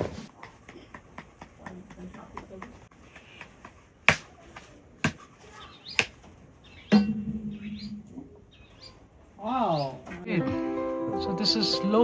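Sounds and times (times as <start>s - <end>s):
sharp knocks: 6.9s - 8.2s.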